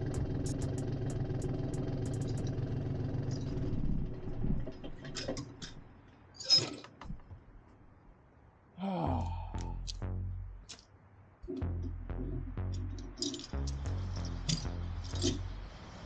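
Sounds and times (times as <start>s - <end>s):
engine idling: 0.0s - 5.0s, 11.5s - 16.0s.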